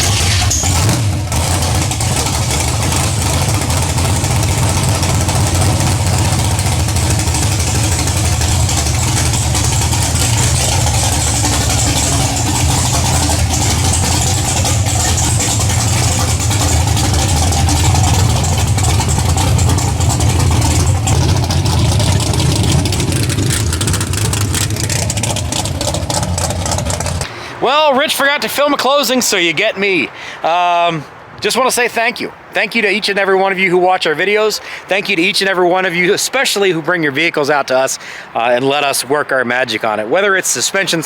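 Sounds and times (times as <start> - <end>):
car engine idling loudly: 0.0 - 27.6.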